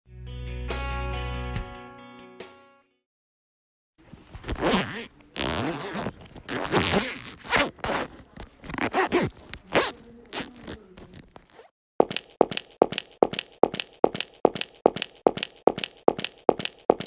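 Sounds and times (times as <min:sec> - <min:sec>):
zipper being zipped: 0:04.3 - 0:11.7.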